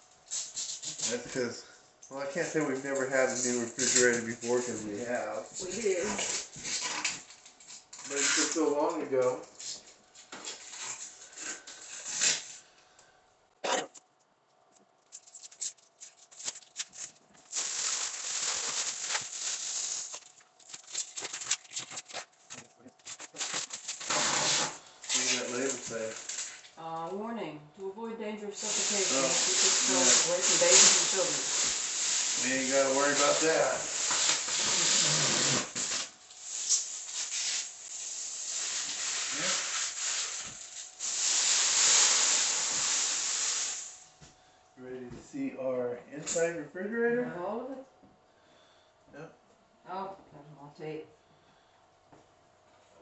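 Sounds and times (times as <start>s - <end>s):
plastic wrap rustling and crackling: 2.1s - 12.6s, 14.8s - 26.8s, 28.6s - 44.0s
plastic packaging crinkling: 14.8s - 26.8s, 28.6s - 44.0s.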